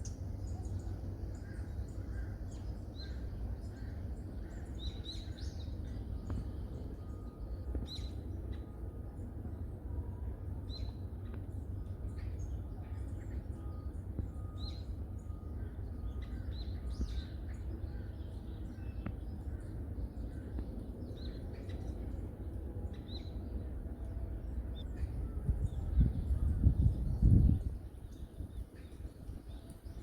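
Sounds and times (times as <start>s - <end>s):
steady low rumble: 0.0s - 30.0s.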